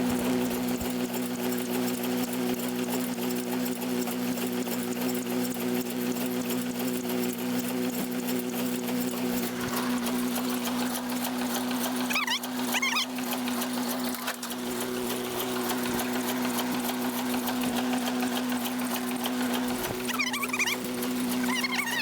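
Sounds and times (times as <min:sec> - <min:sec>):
hay baler clattering: 0:08.9 - 0:22.0
high chirping: 0:12.1 - 0:13.1, 0:20.0 - 0:22.0.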